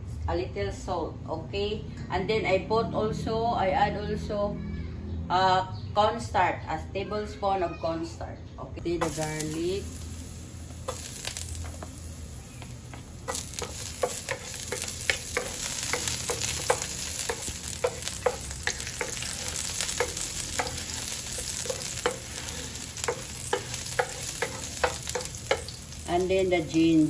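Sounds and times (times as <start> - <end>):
garlic sizzling in a pan: 9.0 - 27.0
spatula scraping a pan: 10.9 - 25.9.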